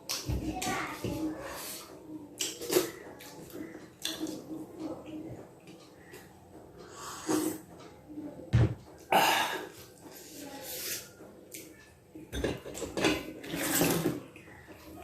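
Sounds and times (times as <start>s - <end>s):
dishes and cutlery clattering: 12.2s - 14.8s.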